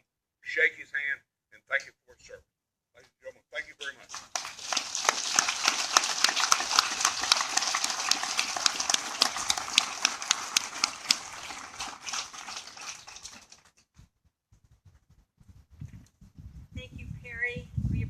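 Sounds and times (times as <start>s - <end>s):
audience applauding: 3.8s - 13.8s.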